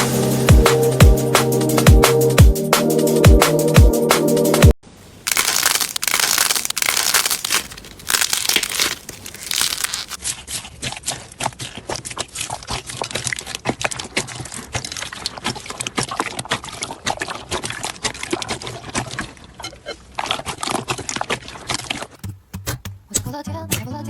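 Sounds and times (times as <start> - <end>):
slime squeezed by hand: 5.3 - 10.2.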